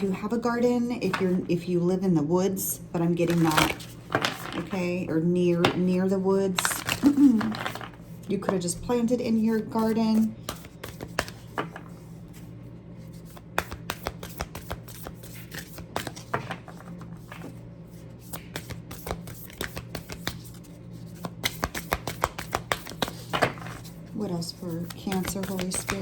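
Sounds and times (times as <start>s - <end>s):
cards being shuffled: 3.2s - 4.8s, 6.6s - 8.3s, 9.8s - 26.0s.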